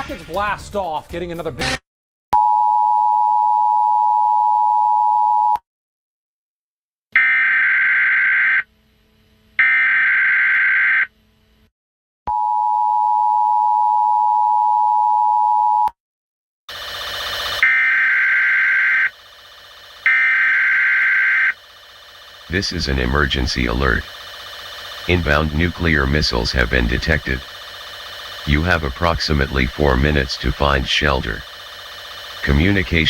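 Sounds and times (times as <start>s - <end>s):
screeching digital data bursts: 17.6s - 33.0s.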